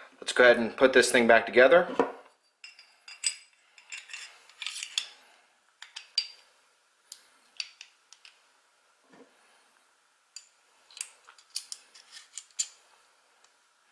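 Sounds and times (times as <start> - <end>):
metal parts scraping: 3.1 - 5.2, 10.9 - 12.8.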